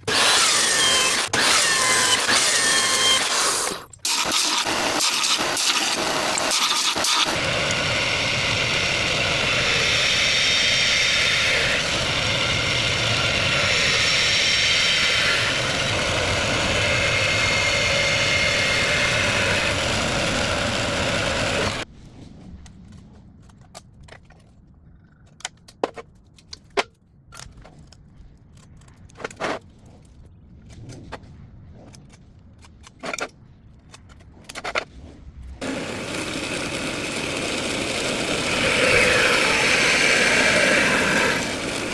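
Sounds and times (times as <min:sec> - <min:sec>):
power tool grinding steel: 0:00.0 - 0:21.9, 0:35.6 - 0:41.9.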